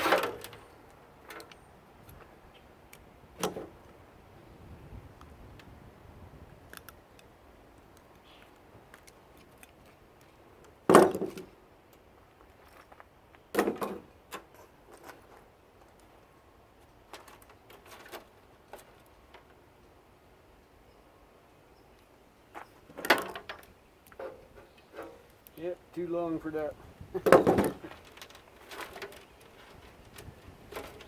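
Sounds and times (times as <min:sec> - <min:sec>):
hand tools and metal parts clicking: 0:27.2 - 0:31.0.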